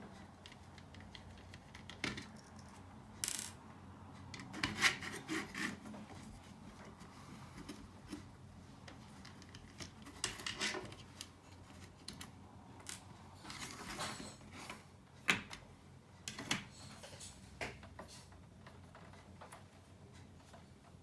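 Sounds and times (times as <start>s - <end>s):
small parts clicking and scraping: 0.1s - 3.6s.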